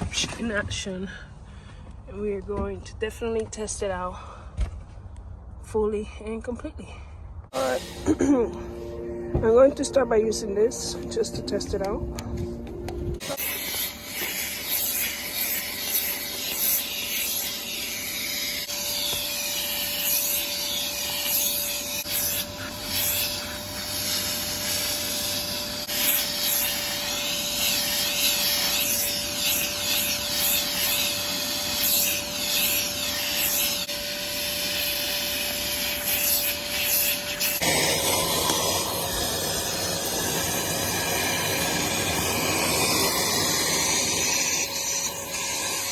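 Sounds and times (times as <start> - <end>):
shop vacuum suction hiss: 7.5 - 9.0, 13.2 - 45.9
steady whine: 7.5 - 14.8, 37.6 - 45.9.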